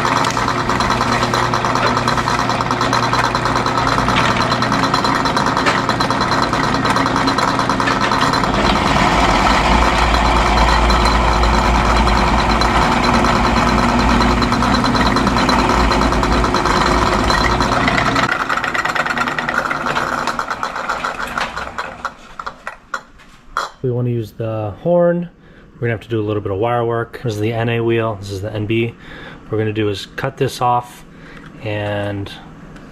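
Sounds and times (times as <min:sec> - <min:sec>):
power drill boring holes: 0:00.0 - 0:22.7.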